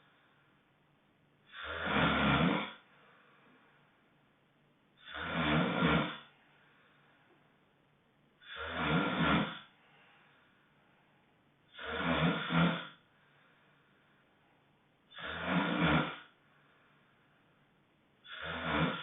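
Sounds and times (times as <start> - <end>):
honking snores: 1.4 - 2.9, 5.0 - 6.4, 8.4 - 9.7, 11.7 - 13.0, 15.1 - 16.4, 18.2 - 19.0.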